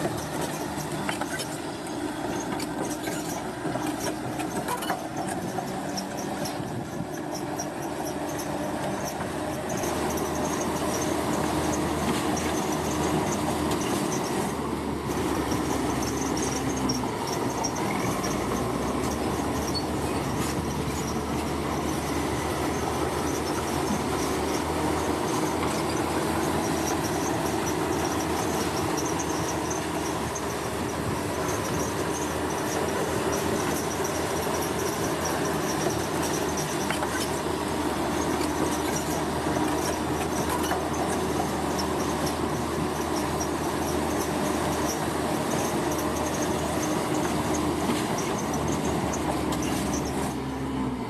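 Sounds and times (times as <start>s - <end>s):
diesel engine running: 0.0s - 51.0s
steel on steel squeal: 15.4s - 37.4s.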